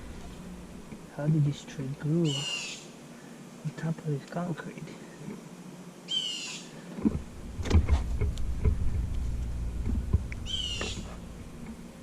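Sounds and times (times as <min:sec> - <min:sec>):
bird calling: 0:02.2 - 0:03.1, 0:06.0 - 0:07.0, 0:10.3 - 0:11.3
low rumble: 0:07.2 - 0:11.8.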